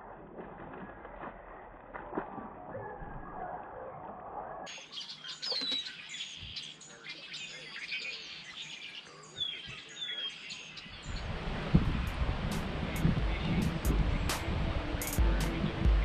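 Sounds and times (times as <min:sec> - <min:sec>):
birds chirping: 0:04.4 - 0:16.0.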